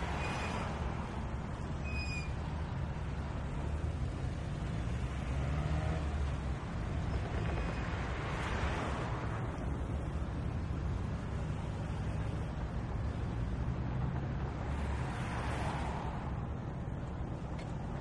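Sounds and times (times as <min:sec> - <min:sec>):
traffic rumble: 0:00.0 - 0:18.0
high squeaks: 0:01.8 - 0:02.4.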